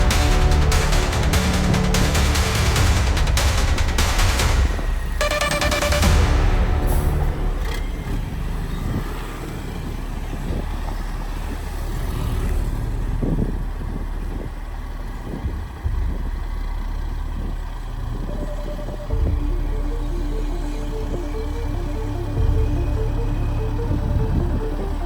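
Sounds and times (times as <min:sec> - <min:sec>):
heavy vehicle engine rumble: 0:06.0 - 0:25.0.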